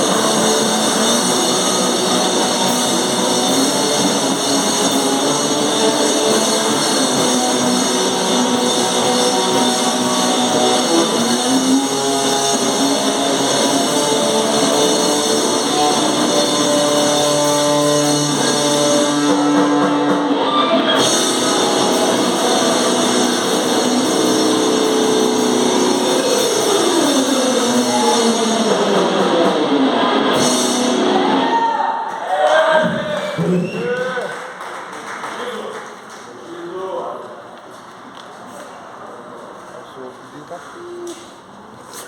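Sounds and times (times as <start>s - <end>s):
noise metal band music: 0.0s - 31.6s
distorted guitar: 0.0s - 31.7s
drums: 0.0s - 34.3s.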